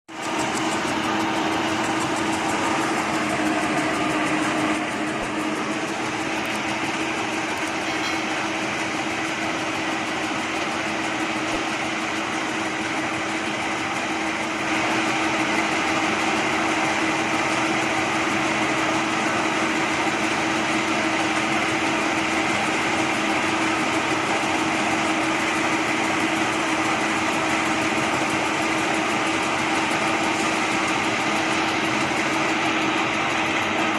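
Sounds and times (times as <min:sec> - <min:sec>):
metal lathe running: 0:00.1 - 0:33.9.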